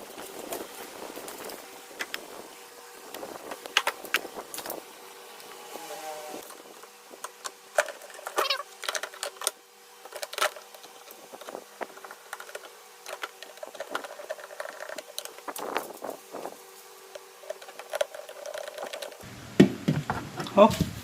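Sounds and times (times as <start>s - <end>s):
metal parts clicking and rattling: 7.8s - 16.1s, 17.4s - 19.2s.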